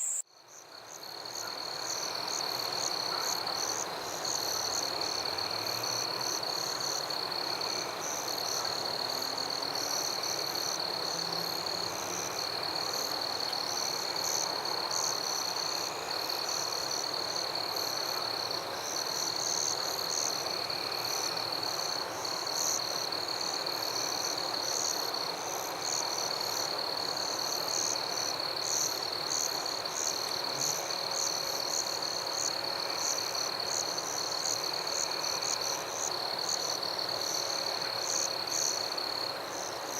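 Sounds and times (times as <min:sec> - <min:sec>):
frogs calling: 0:00.0 - 0:00.2
high-pitched insect trill: 0:00.0 - 0:00.2.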